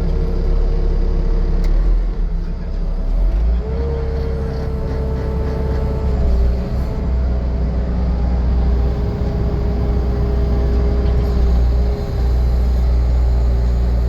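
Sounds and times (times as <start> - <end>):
diesel engine rumbling: 0.0 - 14.0
hydraulic whine: 8.7 - 14.0.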